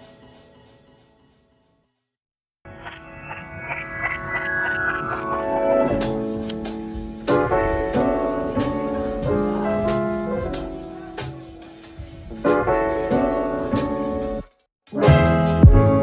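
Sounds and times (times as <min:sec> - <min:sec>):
piano chords ringing: 0:02.7 - 0:14.4, 0:15.0 - 0:16.0.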